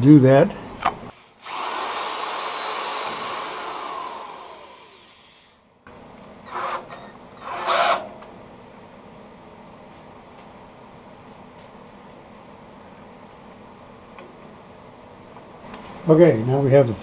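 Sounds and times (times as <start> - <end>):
power tool winding down: 1.4 - 5.5.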